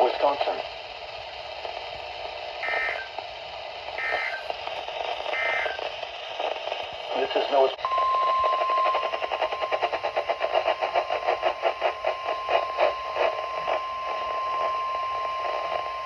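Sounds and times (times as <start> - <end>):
crackle of radio noise: 0.0 - 16.0
steady alarm tone: 2.6 - 3.1, 4.0 - 4.5, 5.2 - 5.9.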